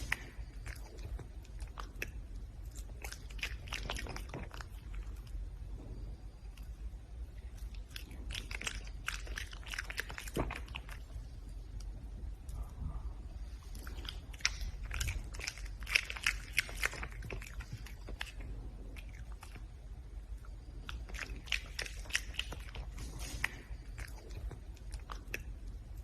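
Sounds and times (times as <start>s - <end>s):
animal chewing and crunching food: 0.0s - 26.0s.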